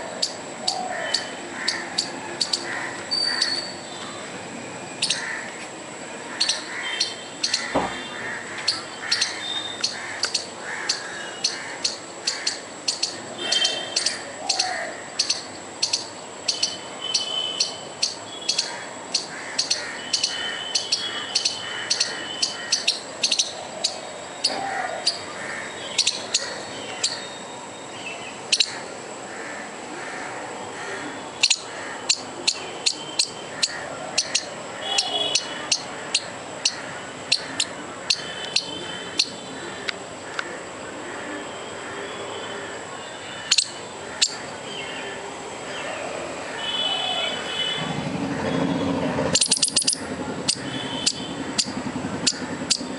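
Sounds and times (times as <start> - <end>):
squirrel alarm chirps: 0.1 - 4.2, 4.8 - 5.4, 6.3 - 7.7, 8.6 - 28.8, 31.4 - 39.5, 43.2 - 44.5, 49.3 - 52.9.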